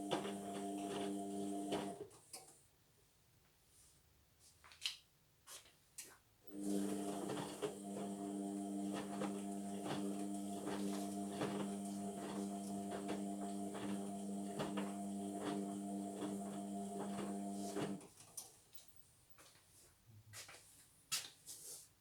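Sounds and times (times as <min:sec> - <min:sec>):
washing machine motor hum: 0:00.0 - 0:02.0, 0:06.5 - 0:18.0.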